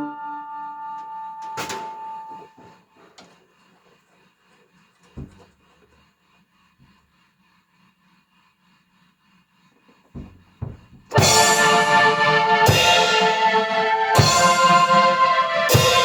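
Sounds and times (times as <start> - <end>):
keyboard chords: 0.0 - 2.4, 11.1 - 16.0
drum kit with cymbal crash: 11.1 - 16.0.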